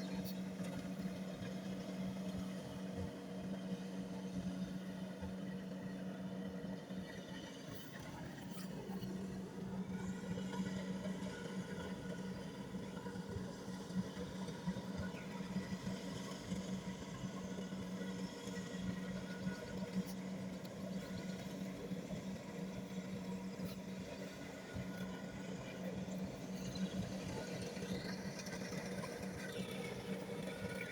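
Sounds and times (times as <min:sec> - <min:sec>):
combine harvester engine running: 0:06.5 - 0:30.9.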